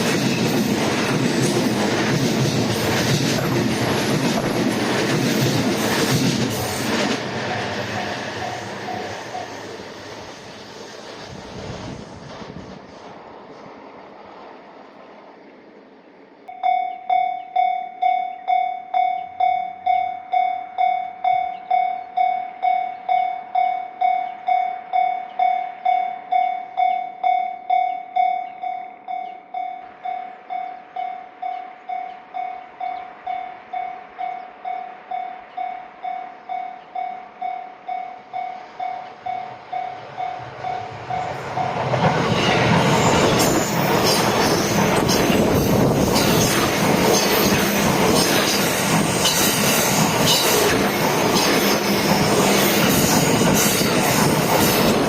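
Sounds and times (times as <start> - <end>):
train wheels clattering: 0.0 - 13.6, 37.9 - 55.0
level-crossing warning bell: 2.6 - 10.4, 16.5 - 55.0.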